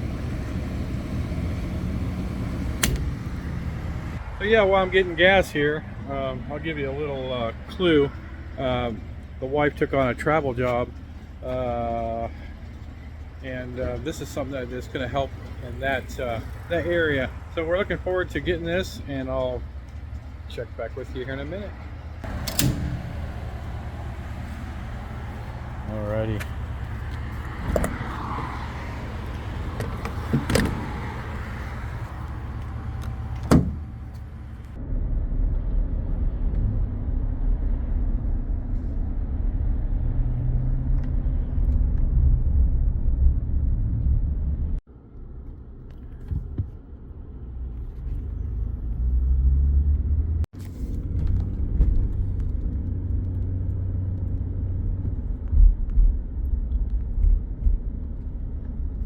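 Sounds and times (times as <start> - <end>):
car engine and road rumble: 0.0 - 59.0
sharp knocks or clicks: 2.8 - 3.2.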